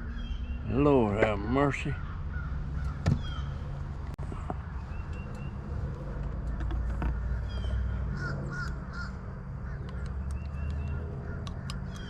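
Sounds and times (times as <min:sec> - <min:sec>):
bird harsh calls: 0:00.0 - 0:03.8, 0:04.8 - 0:12.0
scattered clicks: 0:09.8 - 0:12.0.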